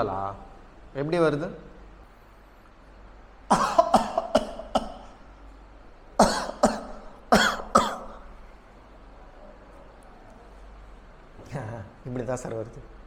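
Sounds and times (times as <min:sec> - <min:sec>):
man coughing: 0:03.5 - 0:05.2, 0:06.2 - 0:08.3.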